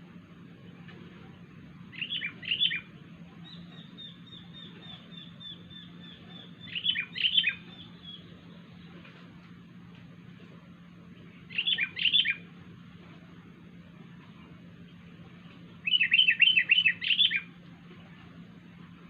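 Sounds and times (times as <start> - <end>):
bird chirping: 1.9 - 8.9, 11.5 - 12.4, 15.8 - 17.5.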